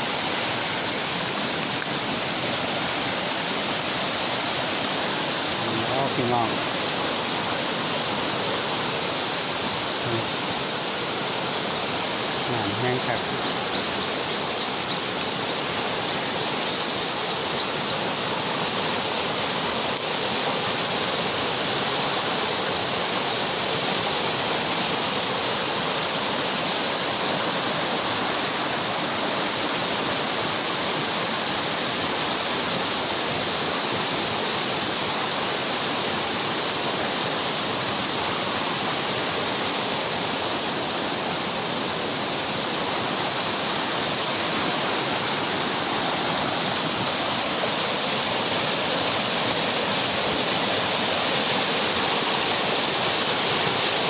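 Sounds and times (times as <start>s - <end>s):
floodwater rushing: 0.0s - 54.0s.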